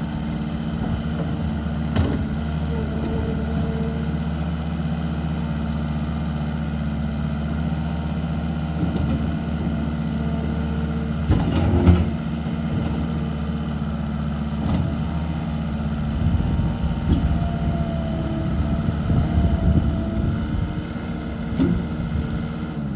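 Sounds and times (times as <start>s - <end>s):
diesel engine running: 0.0s - 22.9s.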